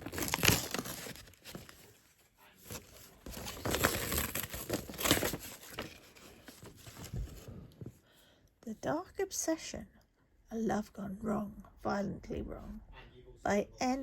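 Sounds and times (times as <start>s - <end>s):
wrapping paper tearing and crinkling: 0.0s - 2.0s, 2.6s - 7.0s.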